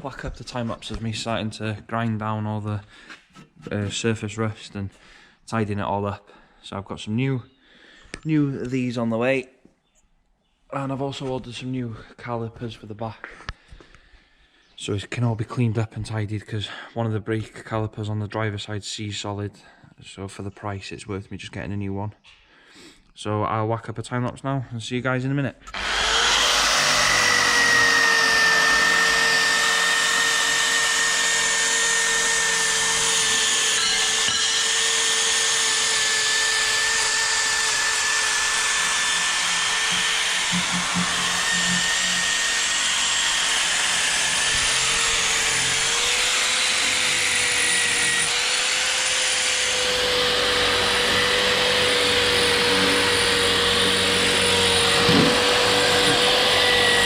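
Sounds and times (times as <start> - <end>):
angle grinder grinding metal: 25.7 - 57.0.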